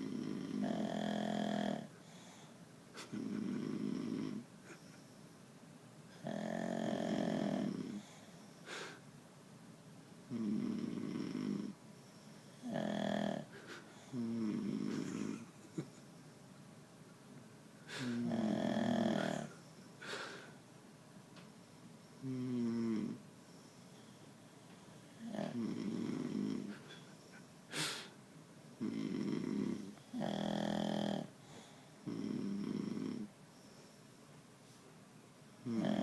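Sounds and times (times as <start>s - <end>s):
people snoring: 0.0s - 1.9s, 3.0s - 4.4s, 6.2s - 8.1s, 10.3s - 11.8s, 17.9s - 20.4s, 22.2s - 23.2s, 25.2s - 27.0s, 28.8s - 33.3s, 35.6s - 36.0s.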